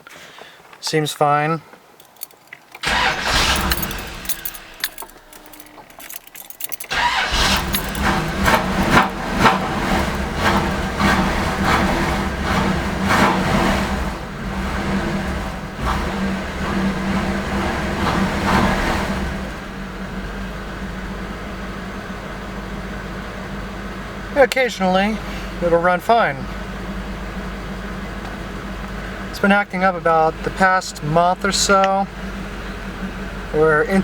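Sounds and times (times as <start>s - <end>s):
car engine cranking and starting: 2.0s - 22.2s
car engine idling: 2.0s - 34.0s.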